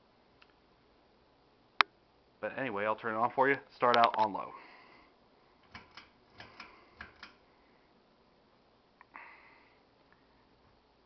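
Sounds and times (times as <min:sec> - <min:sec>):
fan switch clicks: 0:05.6 - 0:07.4.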